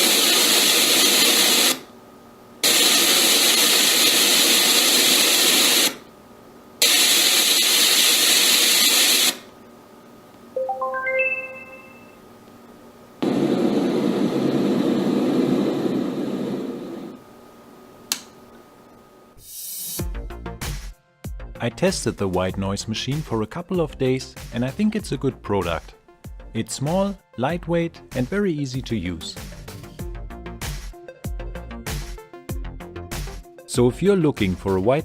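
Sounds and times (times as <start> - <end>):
white noise machine hiss: 0.0 - 20.0
chime-like tones: 10.6 - 12.2.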